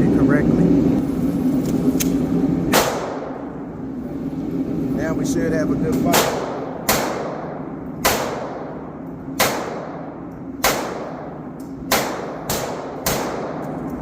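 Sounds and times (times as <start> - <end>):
pistol shots: 2.7 - 3.4, 6.1 - 13.9.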